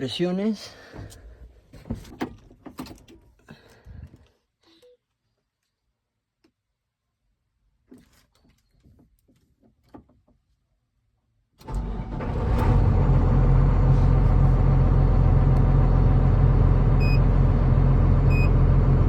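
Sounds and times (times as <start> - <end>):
diesel engine starting and idling: 11.6 - 19.0.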